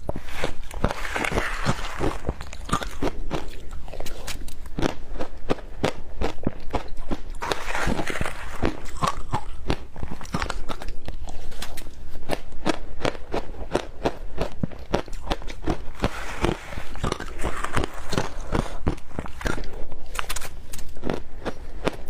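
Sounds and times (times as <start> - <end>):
ice crunching between teeth: 0.0 - 22.0.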